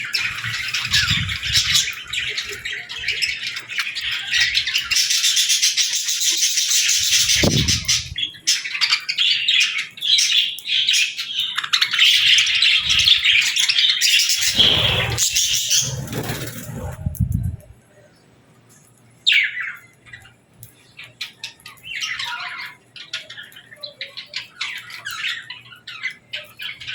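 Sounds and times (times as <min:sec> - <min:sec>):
baby birds chirping: 0:00.0 - 0:17.0
dull low thumps: 0:07.4 - 0:08.2.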